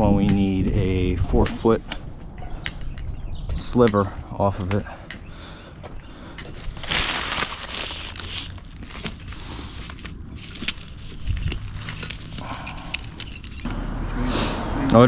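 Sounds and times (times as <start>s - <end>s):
synthetic turf scraping rustle: 6.6s - 13.7s.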